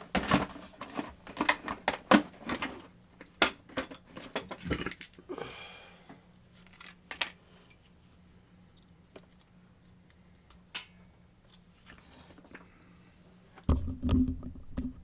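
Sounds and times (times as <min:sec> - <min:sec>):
plastic parts clicking and knocking: 0:00.0 - 0:05.2, 0:06.6 - 0:07.8.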